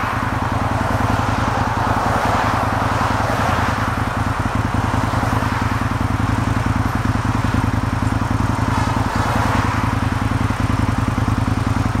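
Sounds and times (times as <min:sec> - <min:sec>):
diesel engine running: 0:00.0 - 0:12.0.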